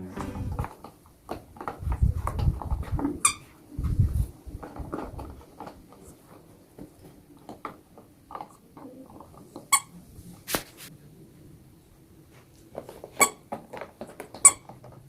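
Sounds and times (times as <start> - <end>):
squeaky toy squeak: 3.2 - 3.4, 13.2 - 13.4, 14.4 - 14.6.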